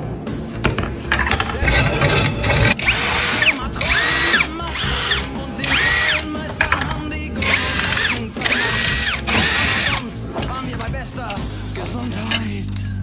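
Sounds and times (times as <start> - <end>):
background music: 0.0 - 13.0
power drill spinning up: 1.1 - 10.1.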